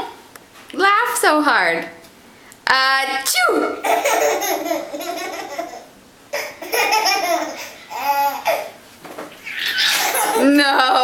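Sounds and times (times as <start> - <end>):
small child laughing: 3.8 - 8.8, 9.4 - 11.0.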